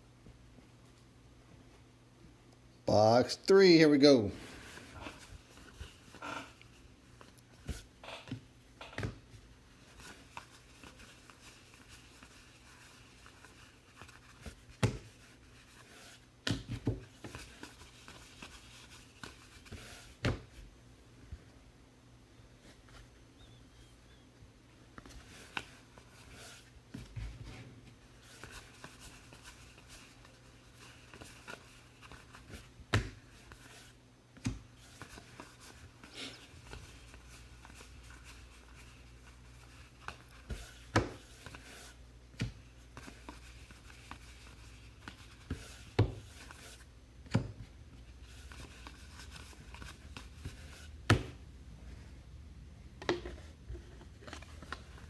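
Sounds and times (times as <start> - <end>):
cards rustling and sliding: 28.2 - 51.4.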